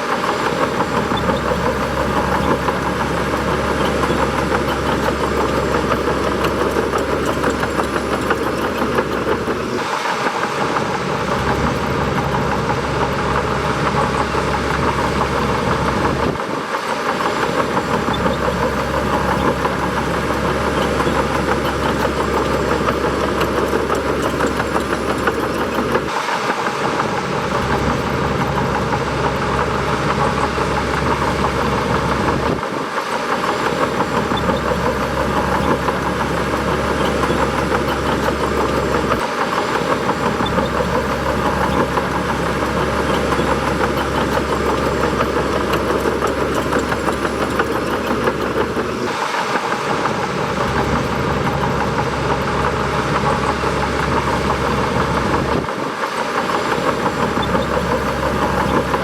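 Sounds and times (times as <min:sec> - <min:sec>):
bulldozer diesel engine rumbling: 0:00.0 - 0:59.0.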